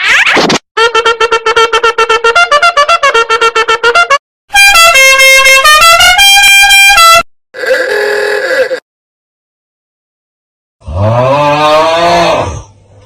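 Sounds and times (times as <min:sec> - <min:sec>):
blaring horn-like melody: 0:00.8 - 0:07.3.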